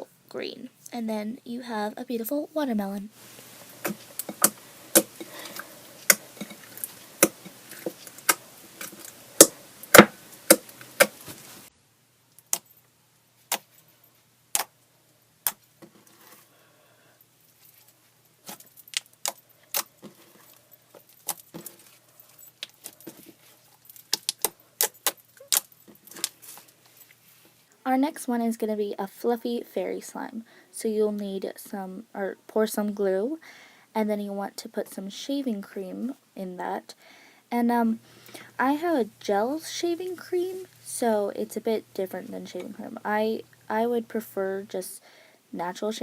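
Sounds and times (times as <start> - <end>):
sharp clicks and pops: 3.8 - 11.3, 24.0 - 26.4.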